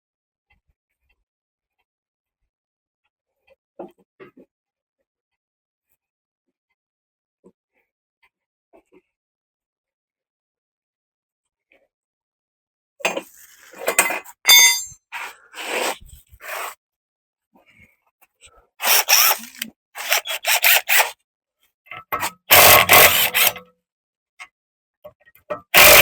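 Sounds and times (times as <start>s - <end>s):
metal tools scraping metal: 13.8s - 15.0s.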